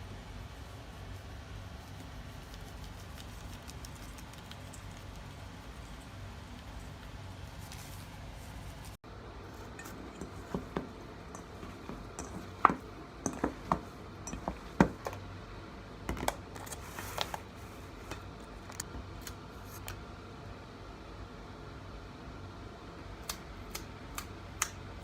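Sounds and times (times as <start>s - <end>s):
steady low hum: 0.0s - 25.0s
utensils and dishes clicking: 9.7s - 15.2s.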